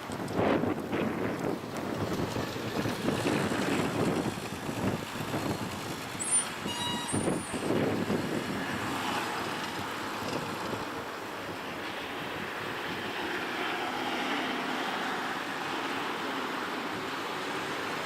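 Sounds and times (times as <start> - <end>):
vehicles passing: 0.0 - 18.0
brief high squeal: 6.2 - 7.6.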